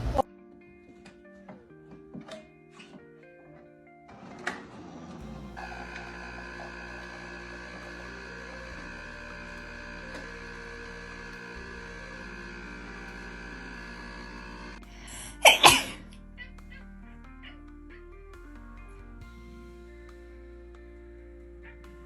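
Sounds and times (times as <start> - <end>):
background music with sustained notes: 0.0 - 22.0.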